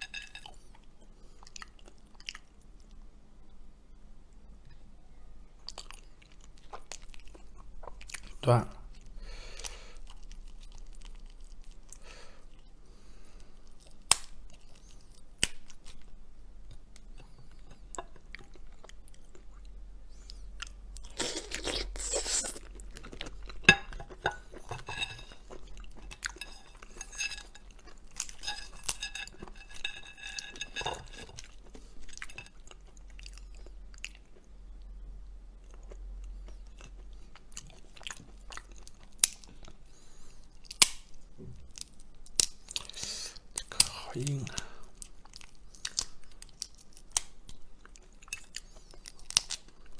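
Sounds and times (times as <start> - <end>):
chewing and crunching crab shell: 9.0 - 12.7, 20.4 - 35.0, 35.6 - 49.9.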